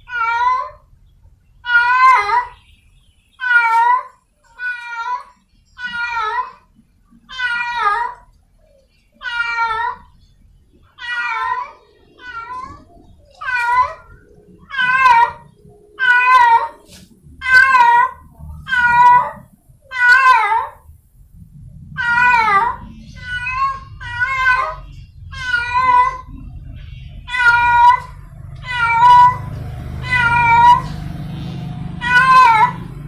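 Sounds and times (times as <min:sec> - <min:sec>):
cat meowing: 0:00.0 - 0:00.8, 0:01.6 - 0:02.6, 0:03.4 - 0:08.3, 0:09.2 - 0:10.1, 0:11.0 - 0:20.8, 0:22.0 - 0:26.5, 0:27.3 - 0:33.0.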